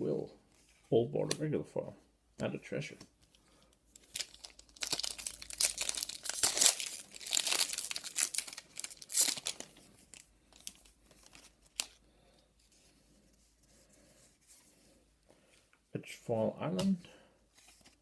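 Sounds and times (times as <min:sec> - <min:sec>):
foil wrapper crinkling: 0:03.9 - 0:12.0.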